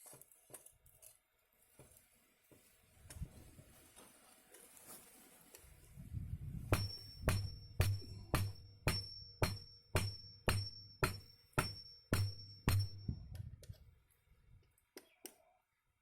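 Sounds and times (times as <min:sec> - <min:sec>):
hammer striking steel: 0:06.7 - 0:13.4.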